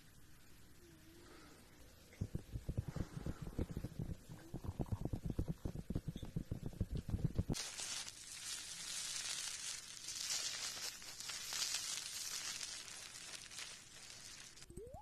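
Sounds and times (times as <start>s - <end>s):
stomach growl: 2.1s - 7.6s
crackly crinkling noise: 2.1s - 14.7s.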